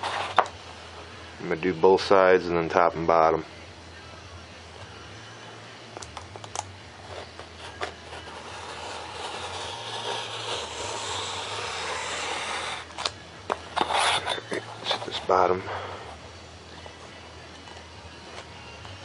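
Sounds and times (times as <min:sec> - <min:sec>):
steady low hum: 0:00.0 - 0:19.0
knife scratching through foam board: 0:07.1 - 0:13.1, 0:13.7 - 0:15.1.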